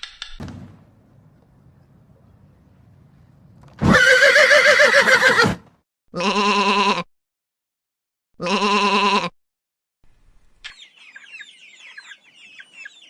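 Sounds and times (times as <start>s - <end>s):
sheep bleating: 6.2s - 7.1s, 8.4s - 9.3s.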